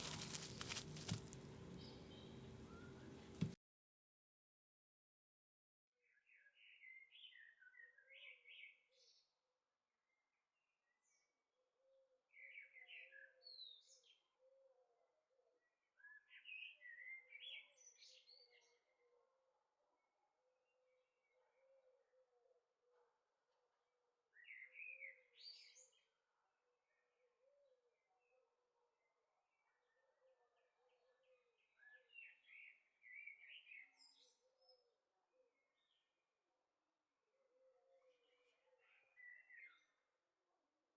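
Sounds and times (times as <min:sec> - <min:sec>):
faint birds chirping: 0:00.0 - 0:03.6, 0:37.2 - 0:40.1.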